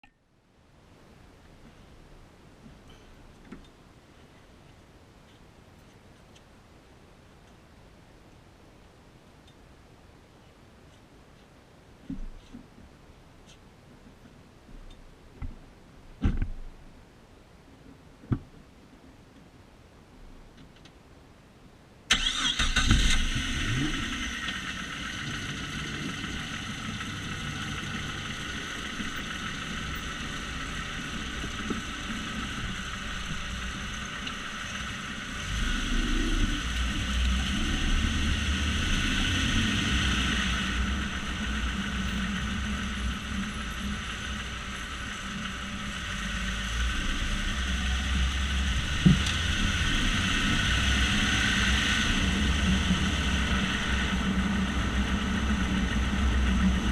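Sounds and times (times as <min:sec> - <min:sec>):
car engine rumble: 0:22.1 - 0:56.9.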